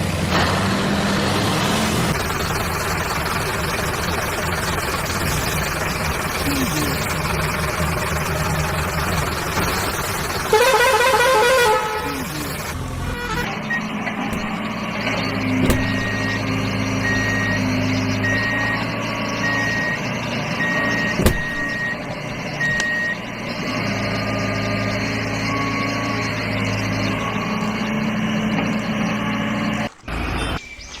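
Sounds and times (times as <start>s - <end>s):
toy truck engine hum: 0.0s - 30.8s
reversing beeper beeping: 9.8s - 30.6s
sharp knocks: 14.3s - 14.8s, 15.6s - 16.3s, 21.1s - 21.8s.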